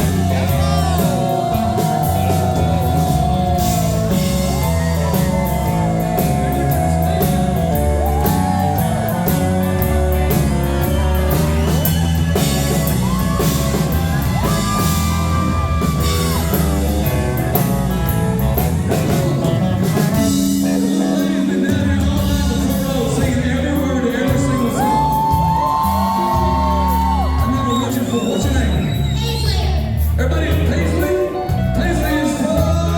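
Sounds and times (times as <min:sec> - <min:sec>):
person singing: 0:00.0 - 0:10.4, 0:20.6 - 0:28.4
people shouting: 0:00.0 - 0:17.0, 0:24.3 - 0:28.0
country-rock band playing: 0:00.0 - 0:32.9.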